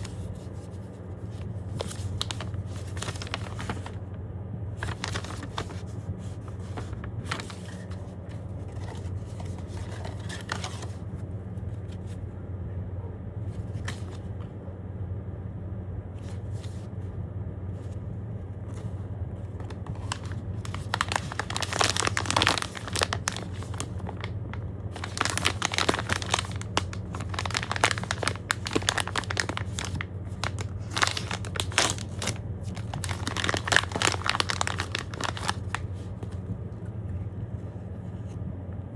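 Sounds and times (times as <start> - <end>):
wrapper crinkling and rustling: 0.0 - 4.1, 4.8 - 11.2, 18.7 - 36.4
steady low hum: 0.0 - 38.9.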